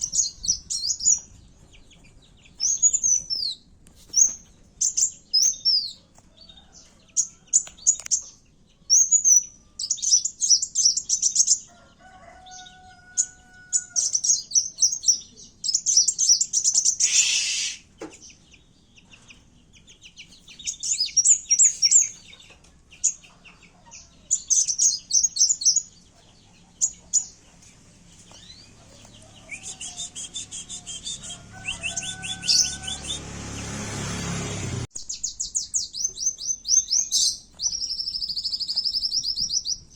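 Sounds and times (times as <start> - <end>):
sunbird chirps and trills: 0.0 - 11.7, 12.4 - 39.9
noisy swish: 29.1 - 34.9.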